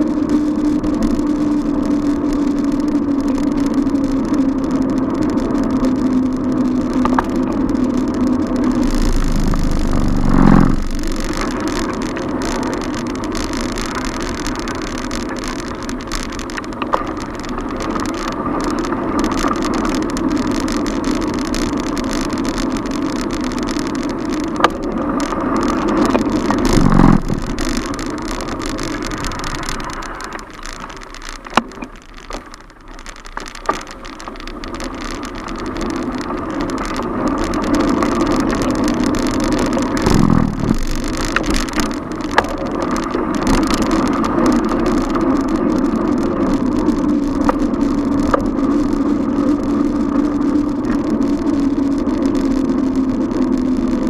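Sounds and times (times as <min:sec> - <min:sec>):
traffic engine hum: 0:00.0 - 0:54.0
sharp clicks: 0:00.9 - 0:51.5
vehicle passing by: 0:08.8 - 0:11.4.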